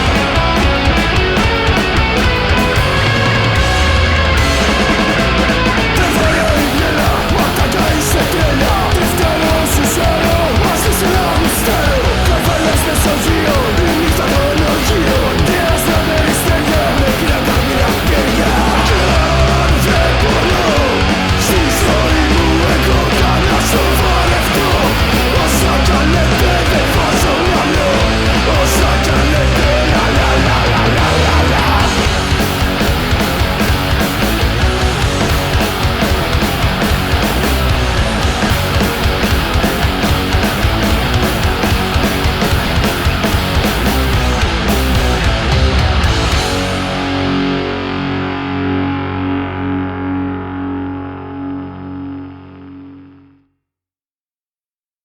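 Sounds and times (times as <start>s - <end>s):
drum and cymbal hits: 0.0s - 47.1s
punk rock band playing: 0.0s - 52.8s
distorted electric guitar: 0.0s - 53.4s.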